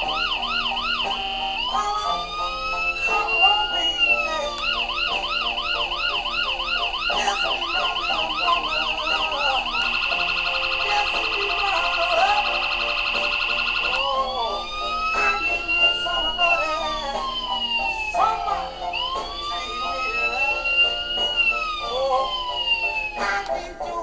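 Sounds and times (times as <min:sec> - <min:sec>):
electronic police siren: 0:00.0 - 0:23.5.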